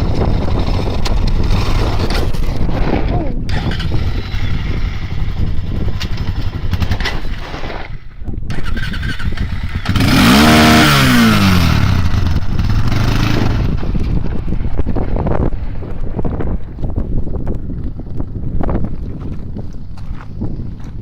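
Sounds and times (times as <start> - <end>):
atv engine revving: 0.0 - 7.2, 8.5 - 15.5
wind on microphone: 0.0 - 21.0.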